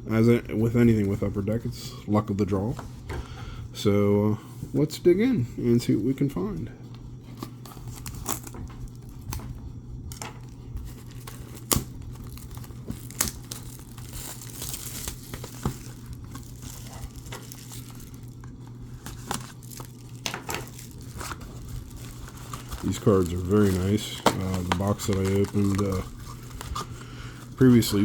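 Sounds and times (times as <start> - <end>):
plastic wrapping tearing and crinkling: 7.6 - 9.5, 10.1 - 28.0
cardboard box handled: 10.4 - 28.0.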